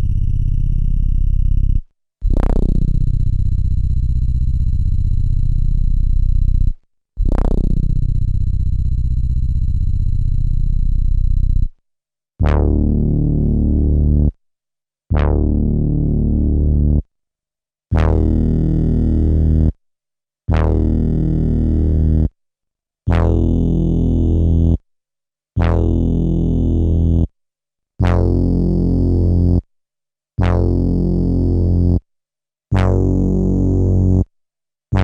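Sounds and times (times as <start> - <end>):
synth-like sampler notes: 0.0 - 11.7.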